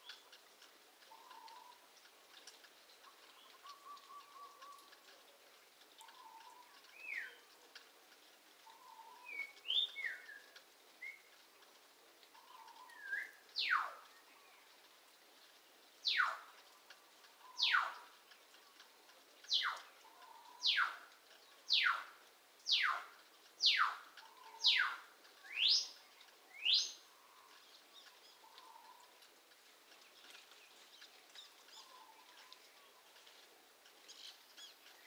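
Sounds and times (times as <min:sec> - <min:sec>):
pet bird whistling calls: 0:16.1 - 0:16.4, 0:17.5 - 0:18.0, 0:20.6 - 0:21.0, 0:21.7 - 0:22.0, 0:22.7 - 0:25.9.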